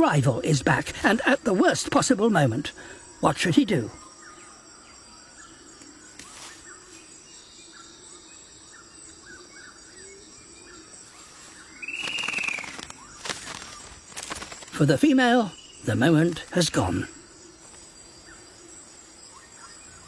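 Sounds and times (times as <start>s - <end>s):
faint bird chirps: 2.8s - 14.0s, 14.7s - 20.0s
loud harsh bird call: 11.8s - 13.0s.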